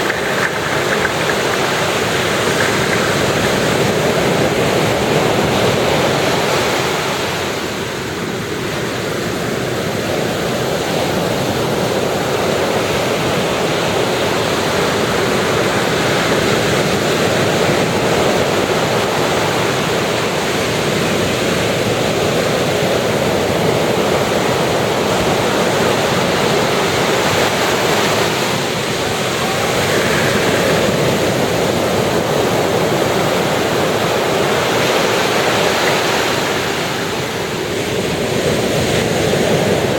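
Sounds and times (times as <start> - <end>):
ocean surf breaking: 0.0 - 39.9.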